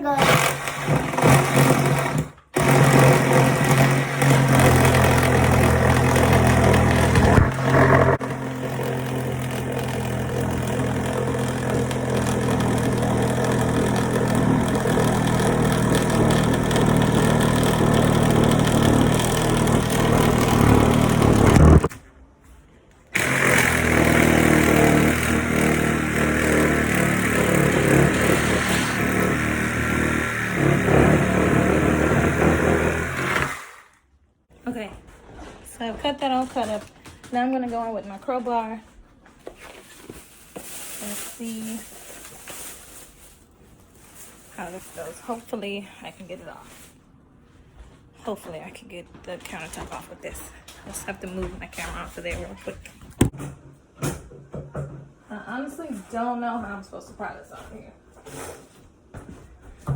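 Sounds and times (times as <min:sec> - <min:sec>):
reciprocating saw cutting countertop: 0:00.1 - 0:21.9, 0:23.2 - 0:34.0.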